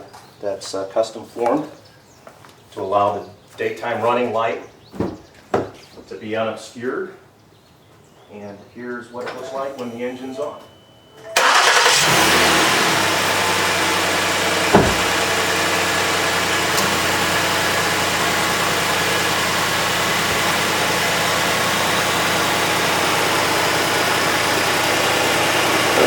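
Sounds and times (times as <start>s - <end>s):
car engine idling: 11.4s - 26.0s
sharp thump: 14.6s - 15.4s.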